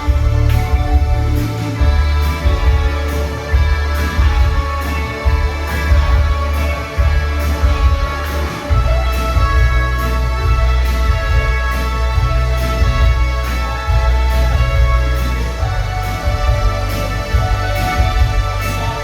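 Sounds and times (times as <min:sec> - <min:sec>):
heavy bass: 0:00.0 - 0:19.0
live band playing: 0:00.0 - 0:19.0
steady drumbeat: 0:00.0 - 0:19.0.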